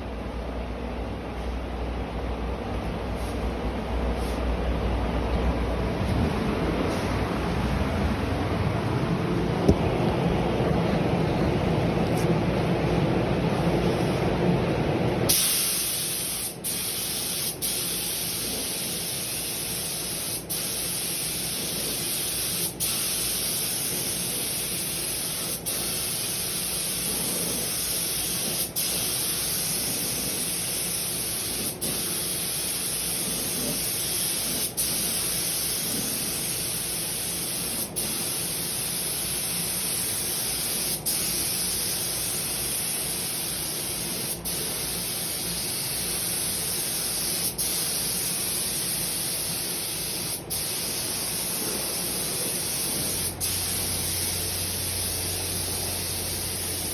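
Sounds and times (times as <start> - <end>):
spray gun hissing: 15.3 - 56.9.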